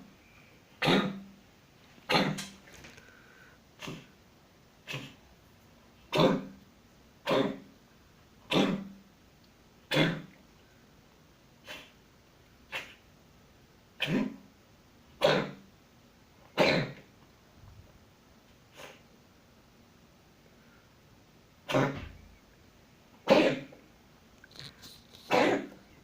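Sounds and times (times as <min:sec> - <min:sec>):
cat coughing: 0:00.8 - 0:01.3, 0:02.1 - 0:02.5, 0:03.8 - 0:04.1, 0:04.9 - 0:05.2, 0:06.1 - 0:06.6, 0:07.2 - 0:07.7, 0:08.5 - 0:09.0, 0:09.9 - 0:10.4, 0:14.0 - 0:14.4, 0:15.2 - 0:15.6, 0:16.6 - 0:17.0, 0:21.6 - 0:22.1, 0:23.2 - 0:23.8, 0:24.5 - 0:25.8.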